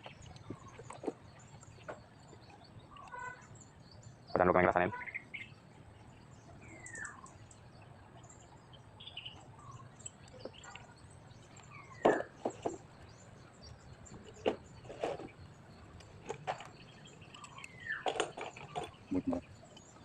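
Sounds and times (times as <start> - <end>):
birds chirping: 0.0 - 20.0
sharp clicks and knocks: 16.0 - 19.1.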